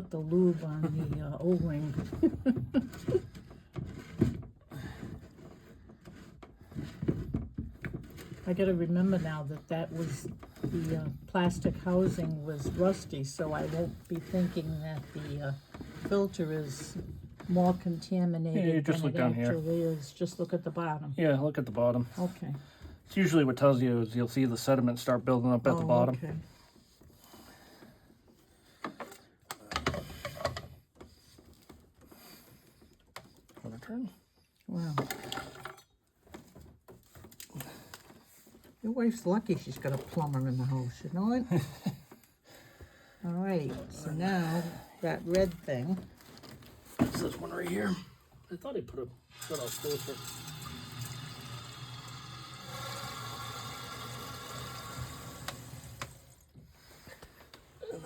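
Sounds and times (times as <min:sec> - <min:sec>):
water hissing through pipes: 0:49.3 - 0:56.5.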